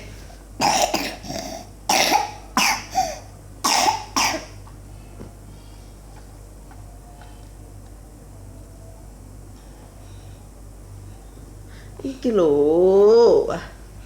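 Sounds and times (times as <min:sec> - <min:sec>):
person coughing harshly: 0:00.6 - 0:04.6.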